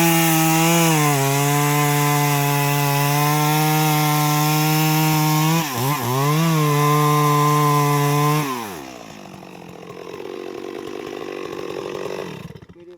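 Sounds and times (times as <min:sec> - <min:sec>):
chainsaw engine running: 0:00.0 - 0:12.9.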